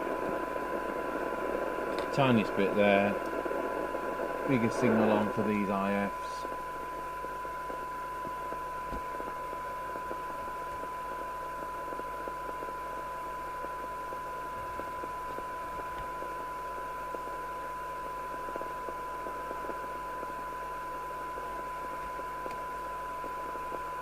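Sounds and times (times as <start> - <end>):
radio background hiss: 0.0 - 24.0
steady test tone: 0.1 - 18.6.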